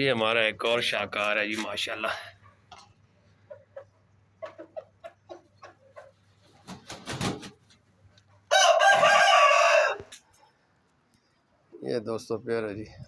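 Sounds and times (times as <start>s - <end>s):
rooster crowing: 8.5s - 10.2s.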